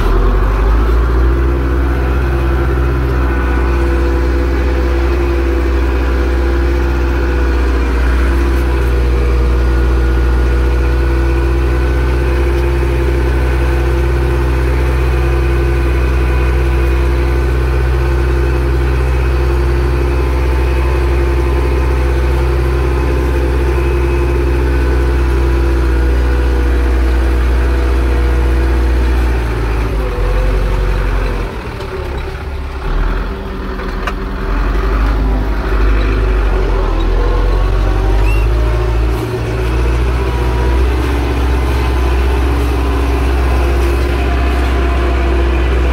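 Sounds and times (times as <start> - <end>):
tractor diesel engine under load: 0.0 - 45.9.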